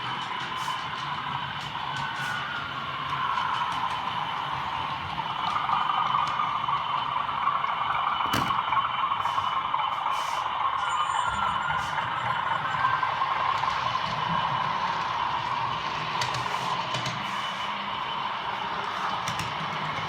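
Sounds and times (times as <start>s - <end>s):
model train motors whirring: 11.9s - 20.0s.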